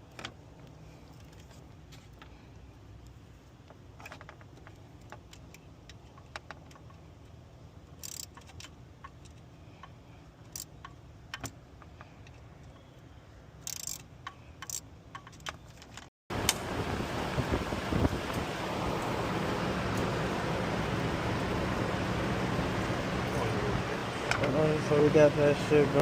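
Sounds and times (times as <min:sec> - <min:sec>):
low steady hum: 0:16.3 - 0:26.0.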